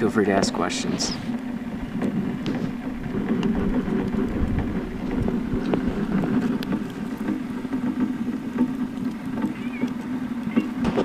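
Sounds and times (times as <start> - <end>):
steady low hum: 0.0 - 11.0
wood fire crackling and popping: 0.0 - 11.0.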